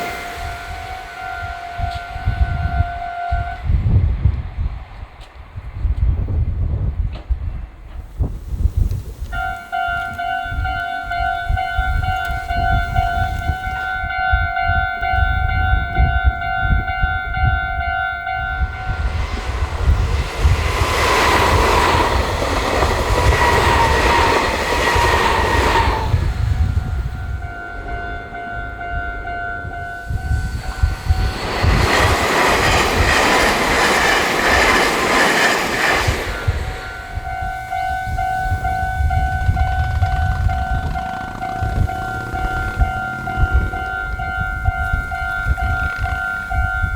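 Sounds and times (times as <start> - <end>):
falling whine: 0.0 - 3.8, 18.2 - 44.4
trains rushing past: 0.0 - 46.9.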